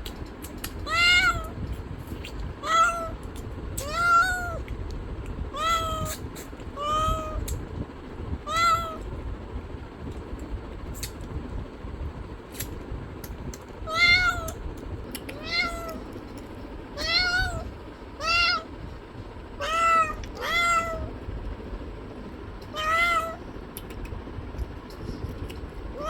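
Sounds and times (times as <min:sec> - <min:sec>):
cat meowing: 0:00.7 - 0:01.6, 0:02.6 - 0:04.6, 0:05.5 - 0:06.2, 0:06.8 - 0:07.6, 0:08.4 - 0:09.1, 0:13.8 - 0:14.6, 0:15.3 - 0:16.0, 0:17.0 - 0:18.8, 0:19.6 - 0:21.2, 0:22.6 - 0:23.4.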